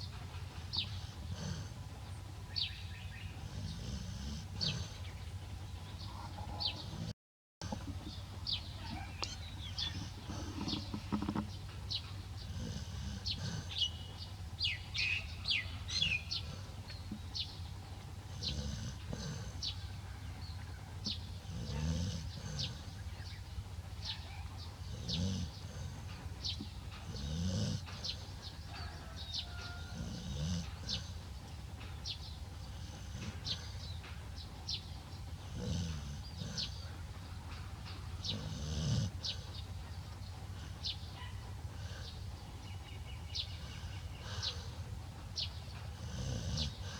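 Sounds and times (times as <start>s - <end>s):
steady low hum: 0.0s - 46.9s
deep snores: 0.7s - 2.0s, 2.6s - 5.2s, 6.6s - 11.6s, 12.3s - 15.2s, 15.9s - 17.4s, 18.2s - 23.6s, 24.8s - 31.6s, 32.6s - 34.0s, 35.3s - 37.2s, 38.2s - 39.7s, 41.7s - 46.9s.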